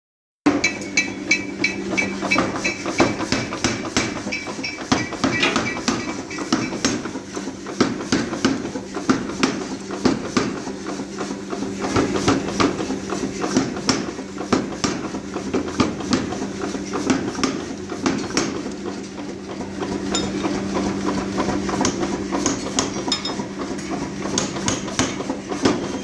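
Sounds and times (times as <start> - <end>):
hammers striking metal: 0.5 - 7.1, 20.0 - 25.9
low machine hum: 19.6 - 24.1.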